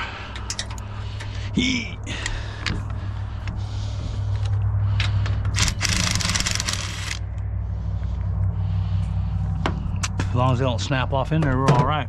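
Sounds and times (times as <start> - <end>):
steady low hum: 0.0 - 12.0
wrench clicking: 5.5 - 7.2.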